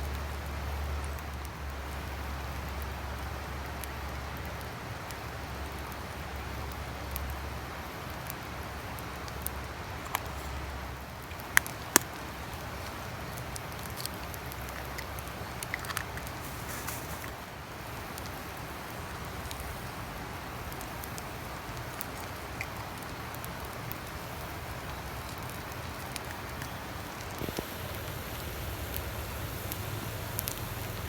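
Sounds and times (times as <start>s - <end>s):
campfire crackling: 0.0s - 31.0s
campfire pops: 8.0s - 31.0s.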